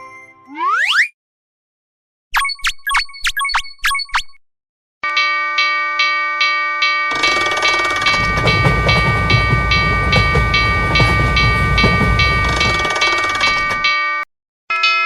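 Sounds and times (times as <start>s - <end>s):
railroad crossing bell clanging: 5.0s - 15.0s
passing train rumble and clatter: 7.2s - 13.9s.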